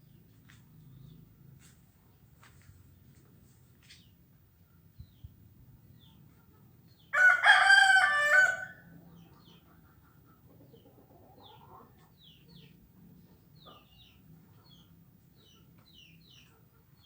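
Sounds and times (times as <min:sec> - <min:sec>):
small birds chirping: 0:00.0 - 0:07.2, 0:09.0 - 0:17.0
rooster crowing: 0:07.1 - 0:08.8.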